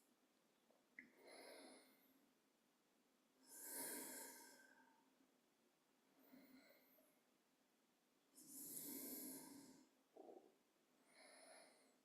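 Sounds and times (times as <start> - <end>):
person breathing through nose: 3.5 - 4.9, 8.4 - 9.9.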